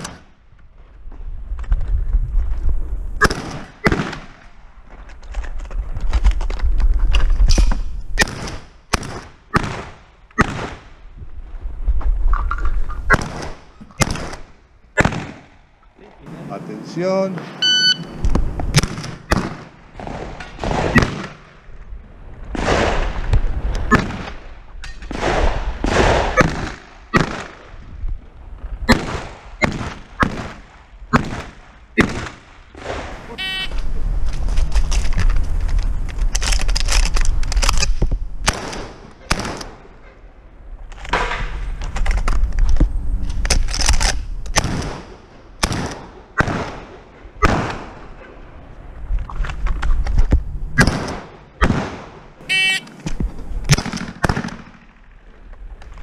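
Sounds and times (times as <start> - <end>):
shotgun shots: 3.2 - 4.4, 8.2 - 10.9, 13.1 - 15.6, 18.7 - 21.6, 25.1 - 27.8, 28.9 - 33.4, 38.4 - 39.8, 44.5 - 48.0, 50.8 - 52.9, 53.7 - 55.0.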